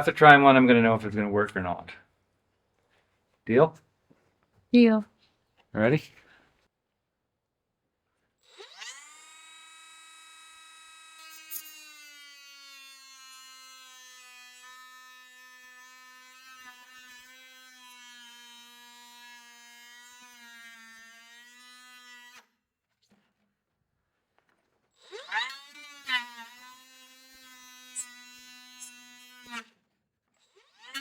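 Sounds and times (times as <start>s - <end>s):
power tool whining: 8.4s - 22.4s, 24.9s - 31.0s
tool cutting plastic bucket: 24.7s - 31.0s.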